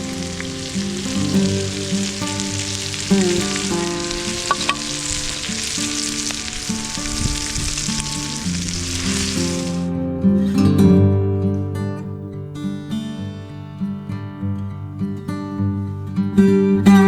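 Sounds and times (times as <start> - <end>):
sausages and bacon sizzling: 0.0 - 9.9
acoustic guitar music: 0.0 - 17.0.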